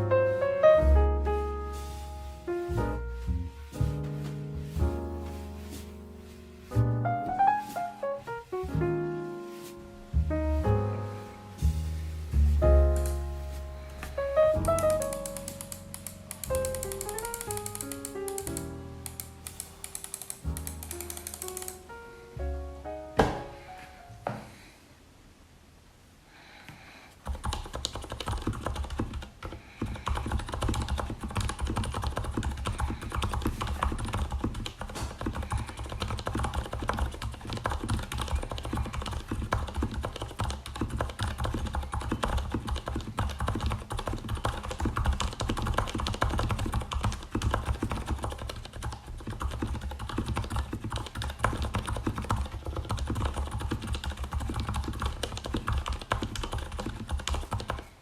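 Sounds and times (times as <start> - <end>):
fast typing on mechanical keyboard: 14.6 - 21.9, 27.2 - 57.9.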